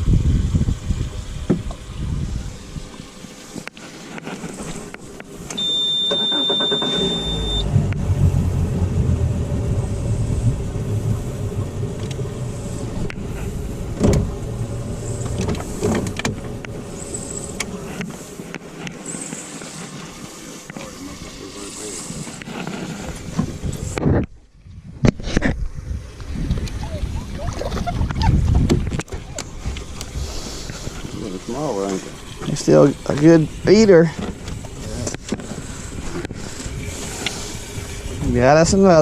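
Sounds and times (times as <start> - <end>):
boat motor running: 0.0 - 24.0, 26.2 - 39.0
high beep: 5.6 - 7.7.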